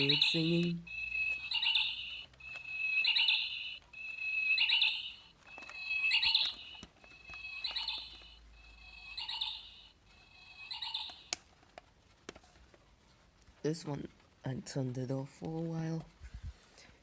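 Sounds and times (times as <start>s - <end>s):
electronic bird-song alarm: 0.0s - 11.4s.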